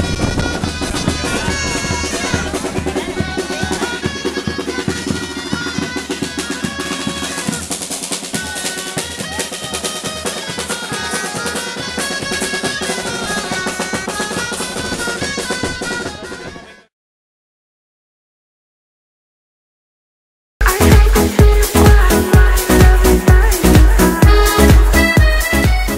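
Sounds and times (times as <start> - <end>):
snare drum rolls: 0.0 - 16.7
festive band music: 0.0 - 16.9, 20.6 - 25.9
bass drum: 20.6 - 25.9.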